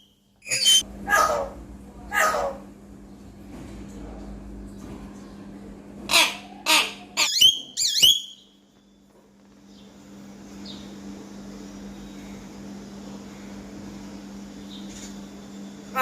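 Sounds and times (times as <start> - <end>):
myna bird screeching: 0.4 - 1.4, 6.1 - 8.4
myna bird warbling whistles: 7.2 - 8.5.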